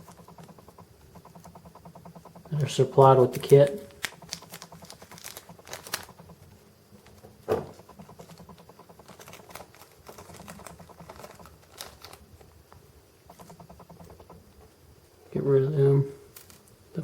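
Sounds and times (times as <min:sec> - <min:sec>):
small model parts clicking: 0:00.0 - 0:06.4.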